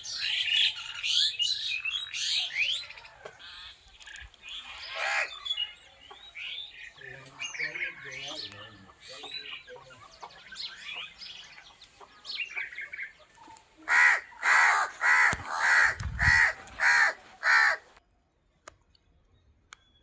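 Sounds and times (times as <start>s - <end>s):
small birds chirping: 0.0s - 20.0s
crow cawing: 4.9s - 5.3s, 13.8s - 17.9s.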